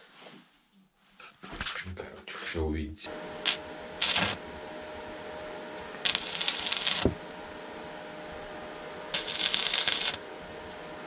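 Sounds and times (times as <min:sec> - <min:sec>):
electrical hum: 0:01.2 - 0:11.0
arc welding crackling sizzle: 0:03.1 - 0:10.6.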